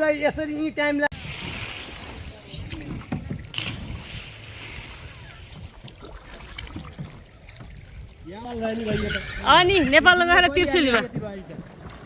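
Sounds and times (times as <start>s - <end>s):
wind rumbling on microphone: 1.1s - 12.0s
kayak paddle splashing in water: 2.8s - 12.0s.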